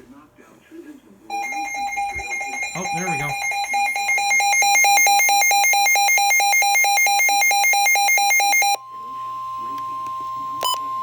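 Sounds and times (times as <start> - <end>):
rapid electronic alarm beeping: 1.3 - 8.8.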